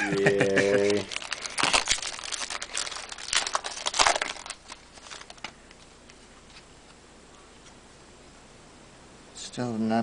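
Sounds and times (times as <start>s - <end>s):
card pack wrappers crinkling: 0.6s - 6.2s.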